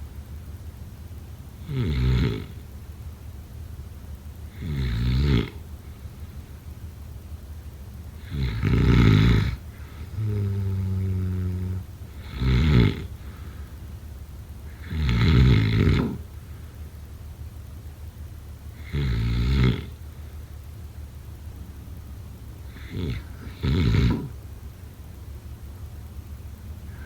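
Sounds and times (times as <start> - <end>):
steady low hum: 0.0 - 27.0
person snoring: 1.6 - 2.6, 4.6 - 5.6, 8.2 - 13.2, 14.8 - 16.2, 18.8 - 19.9, 22.7 - 24.4.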